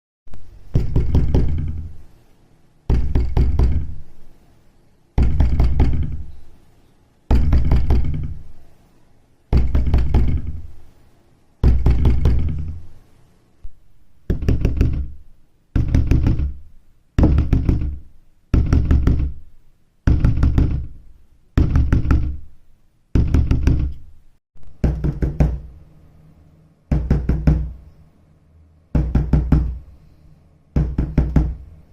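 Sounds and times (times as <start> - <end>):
heavy pounding on a door: 0.7 - 2.0, 2.9 - 4.1, 5.2 - 6.3, 7.3 - 8.6, 9.5 - 10.7, 11.6 - 12.9, 14.3 - 15.2, 15.8 - 19.4, 20.0 - 21.0, 21.6 - 22.5, 23.2 - 24.0, 24.8 - 25.7, 26.9 - 27.8, 29.0 - 29.8, 30.8 - 31.6.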